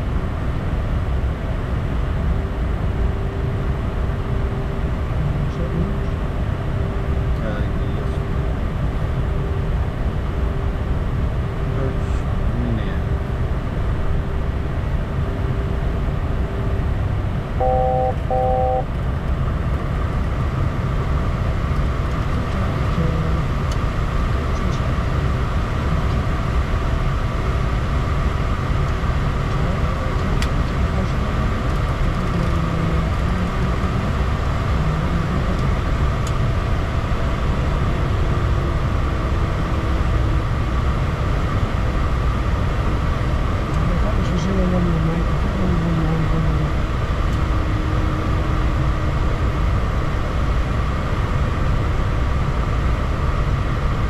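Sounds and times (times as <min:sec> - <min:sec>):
jet engine rumble: 0:00.0 - 0:54.0
short electronic beeps: 0:17.6 - 0:18.9.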